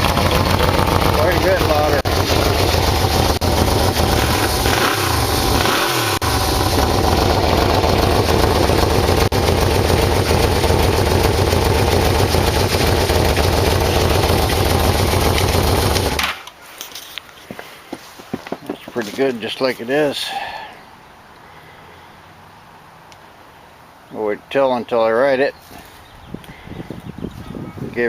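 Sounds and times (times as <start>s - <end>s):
motorcycle engine running: 0.0s - 16.2s.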